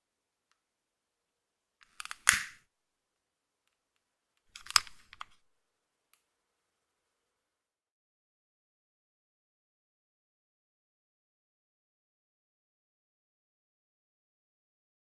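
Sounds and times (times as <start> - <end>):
lighter clicks and snap: 1.9 - 2.6.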